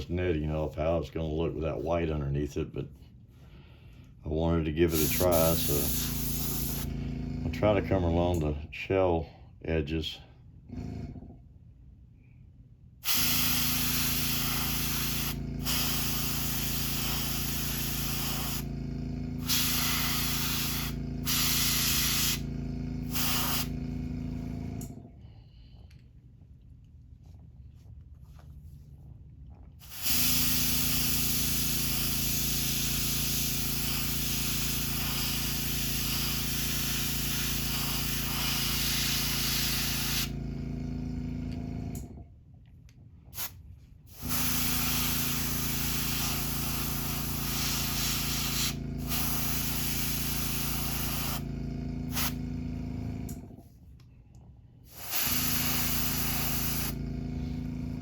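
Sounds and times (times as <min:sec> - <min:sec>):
compressor hum: 0:00.0 - 0:58.0
airbrush spraying paint: 0:04.9 - 0:07.0, 0:13.0 - 0:18.8, 0:19.4 - 0:23.8, 0:29.8 - 0:40.4, 0:43.4 - 0:51.5, 0:52.1 - 0:52.4, 0:54.9 - 0:57.0
air puff: 0:04.9 - 0:07.8, 0:13.0 - 0:25.9, 0:29.8 - 0:41.0, 0:43.3 - 0:53.6, 0:54.8 - 0:58.0.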